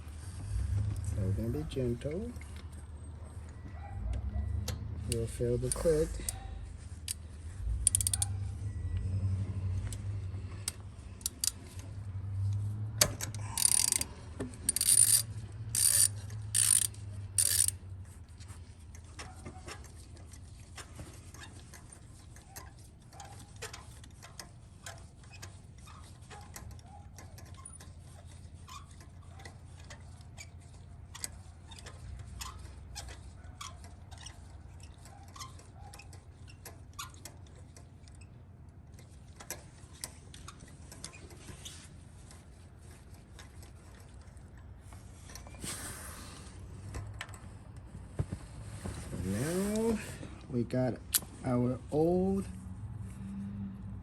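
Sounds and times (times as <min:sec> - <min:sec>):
ratchet wrench clicking: 0:04.6 - 0:06.4, 0:07.0 - 0:08.6, 0:09.9 - 0:17.8.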